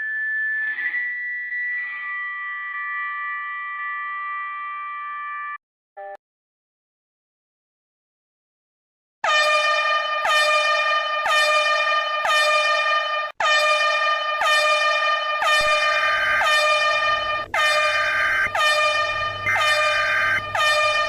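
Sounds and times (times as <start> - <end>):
pulsing electronic alarm tone: 9.3 - 21.0
steady electronic tone: 15.6 - 21.0.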